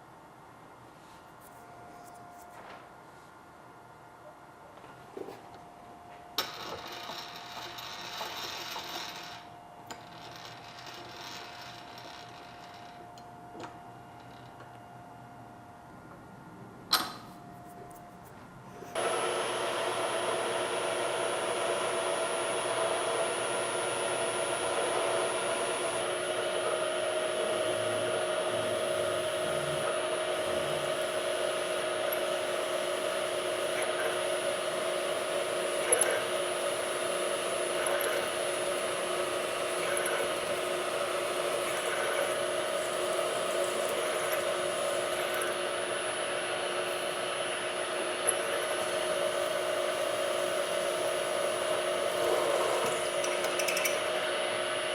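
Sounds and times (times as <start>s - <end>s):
electric motor with high whine: 18.9s - 54.9s.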